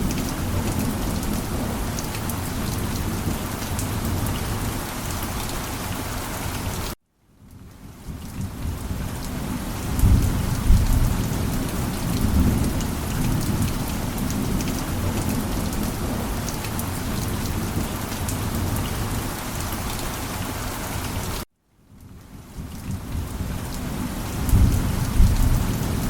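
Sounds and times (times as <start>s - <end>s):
rain pattering on a surface: 0.0s - 26.0s
low thunder rumble: 8.4s - 19.0s, 22.9s - 26.0s.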